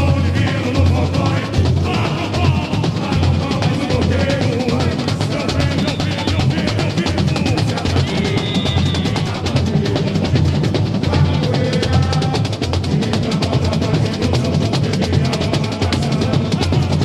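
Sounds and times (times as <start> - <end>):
rapid snare drum strokes: 0.0 - 17.0
surdo bass drum beats: 0.0 - 17.0.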